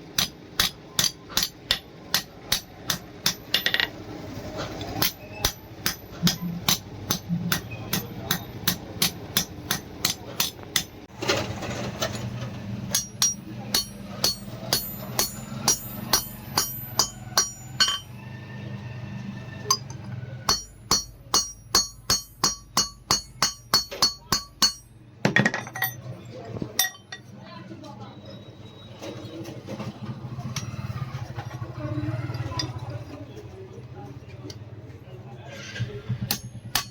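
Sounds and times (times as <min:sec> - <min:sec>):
hammer striking steel on anvil: 0:00.1 - 0:03.9, 0:04.9 - 0:11.0, 0:12.8 - 0:18.2, 0:19.6 - 0:26.0, 0:26.8 - 0:27.2, 0:36.1 - 0:36.9.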